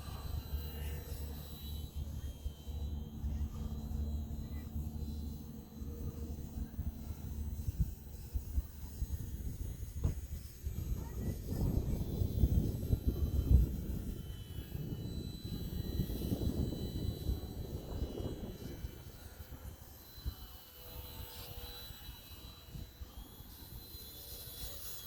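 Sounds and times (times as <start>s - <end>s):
model plane electric motor whine: 0.0s - 25.0s
wind buffeting microphone: 5.8s - 23.7s.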